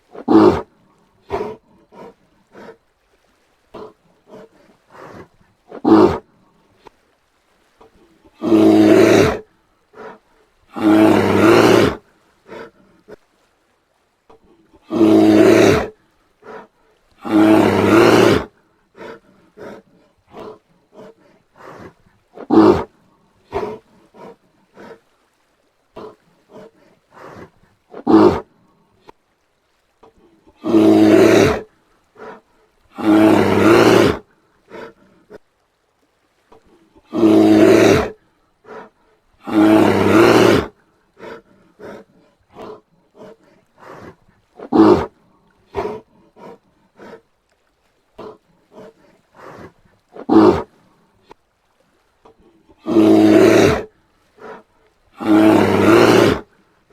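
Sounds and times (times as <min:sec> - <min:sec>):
bear roaring: 0:00.1 - 0:00.7, 0:01.3 - 0:02.8, 0:03.7 - 0:06.2, 0:08.4 - 0:12.8, 0:14.8 - 0:16.6, 0:17.2 - 0:22.9, 0:23.5 - 0:25.0, 0:26.0 - 0:28.5, 0:30.5 - 0:35.4, 0:37.0 - 0:45.1, 0:45.7 - 0:47.2, 0:48.2 - 0:50.7, 0:52.8 - 0:54.6, 0:55.2 - 0:56.5.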